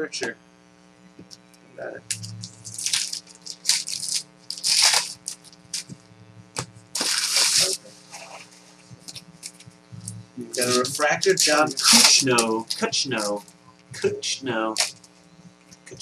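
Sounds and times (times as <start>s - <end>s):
steady electrical hum: 0.0s - 16.0s
cards being handled: 2.1s - 6.0s, 10.6s - 14.1s
foil wrappers crinkling: 2.1s - 6.0s, 6.6s - 9.7s, 10.5s - 14.1s, 14.7s - 15.2s.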